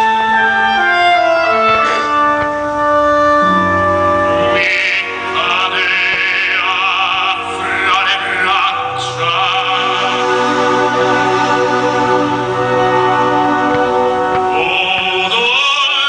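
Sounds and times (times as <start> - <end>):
operatic singing with orchestra: 4.1 - 16.0.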